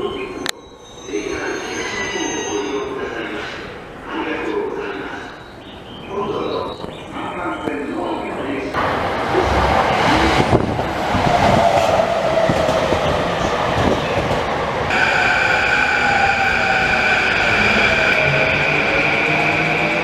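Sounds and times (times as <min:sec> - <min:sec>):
electric train rumbling on rails: 0:00.0 - 0:20.0
high-pitched whine: 0:14.9 - 0:20.0.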